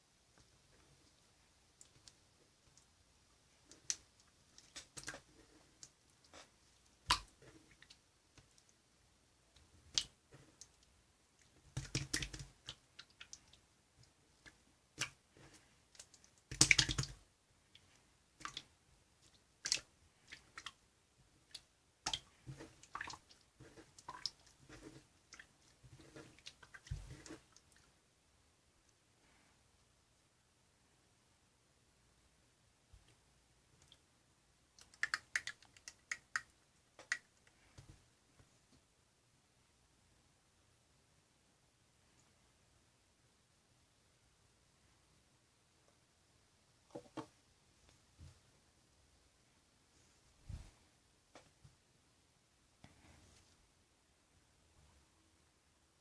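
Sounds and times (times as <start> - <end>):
soft clicks and taps: 46.9 - 48.4, 50.4 - 51.8.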